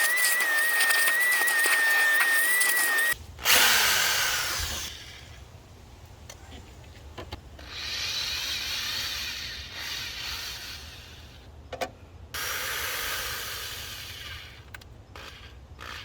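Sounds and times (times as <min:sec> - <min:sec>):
tool scraping: 0:00.0 - 0:03.2.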